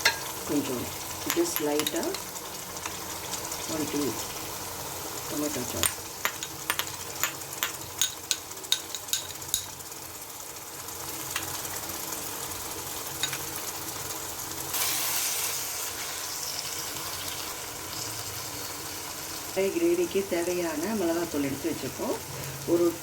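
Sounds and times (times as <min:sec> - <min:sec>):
masala sizzling in a pan: 0:00.0 - 0:23.0.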